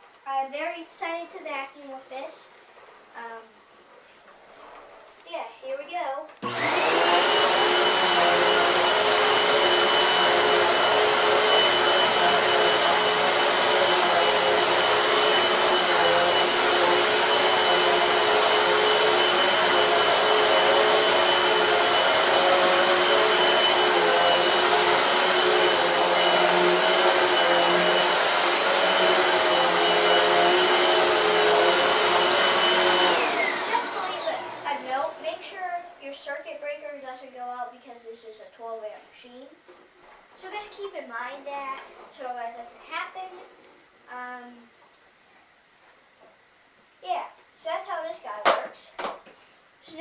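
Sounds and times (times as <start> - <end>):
upright vacuum cleaner whine: 6.4 - 35.6.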